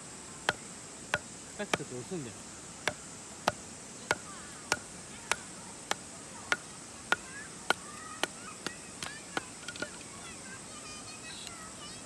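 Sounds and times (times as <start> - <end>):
insect trill: 0.0 - 12.0
faint bird chirps: 4.0 - 12.0.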